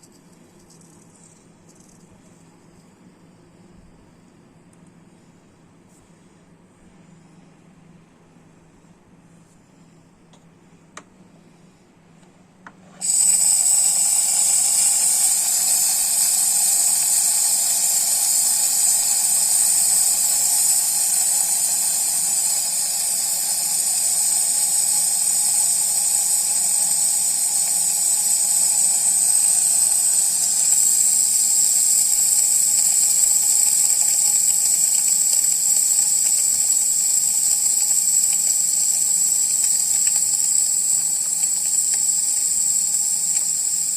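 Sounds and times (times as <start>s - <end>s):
steam wand hissing: 13.0s - 43.9s.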